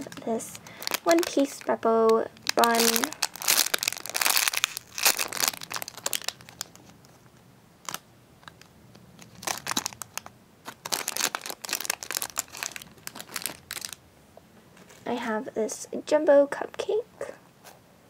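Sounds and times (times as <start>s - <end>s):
squishy toy crinkling and rustling: 0.0s - 14.0s.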